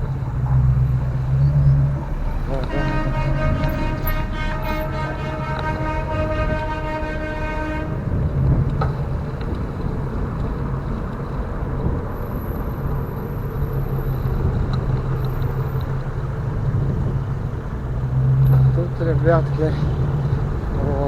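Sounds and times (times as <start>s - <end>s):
low engine hum: 0.0s - 21.0s
traffic noise: 0.0s - 21.0s
vehicle horn blast: 2.1s - 8.3s.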